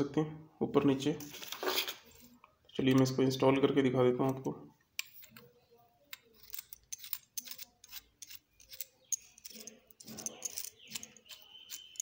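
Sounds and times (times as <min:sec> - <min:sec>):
metal and plastic parts clicking: 0:06.1 - 0:12.0.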